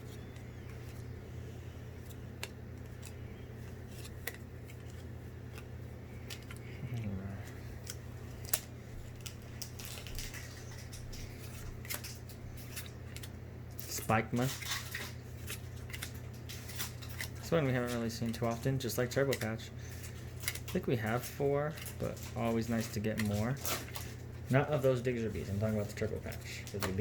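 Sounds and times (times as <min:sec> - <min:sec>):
low hum: 0:00.0 - 0:17.5
cards being flipped through: 0:00.0 - 0:27.0.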